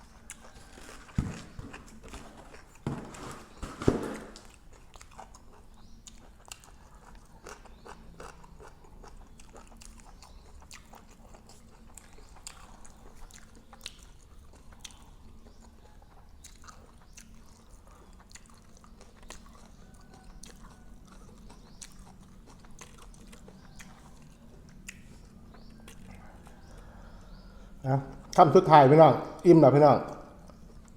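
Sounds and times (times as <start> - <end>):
person chewing crunchy food: 0.0 - 28.4, 30.3 - 30.9.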